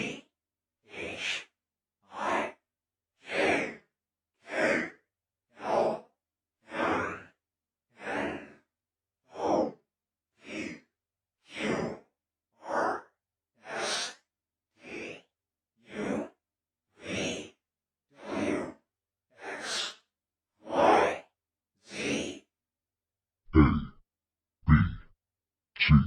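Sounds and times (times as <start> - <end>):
man whispering: 1.1 - 1.5, 19.4 - 20.0, 23.5 - 24.0, 24.7 - 25.1, 25.8 - 26.0.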